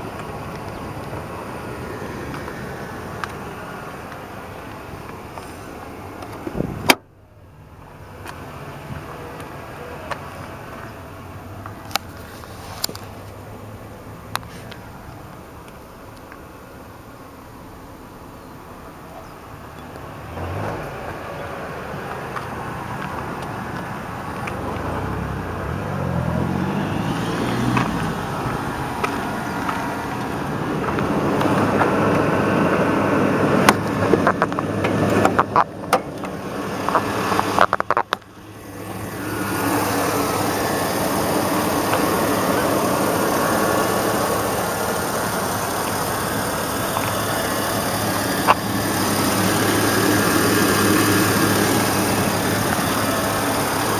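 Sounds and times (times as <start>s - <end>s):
car engine running: 0.0s - 53.9s
sharp clicks and knocks: 33.7s - 38.3s.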